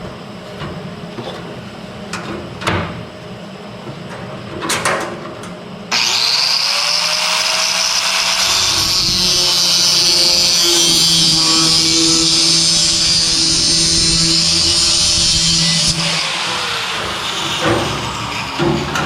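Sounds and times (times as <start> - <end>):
power tool cutting metal: 5.9 - 19.0.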